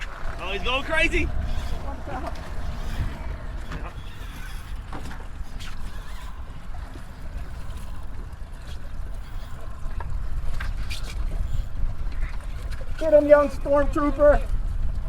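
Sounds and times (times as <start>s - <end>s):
steady low rumble: 0.0s - 10.6s
water lapping around boat: 0.0s - 15.0s.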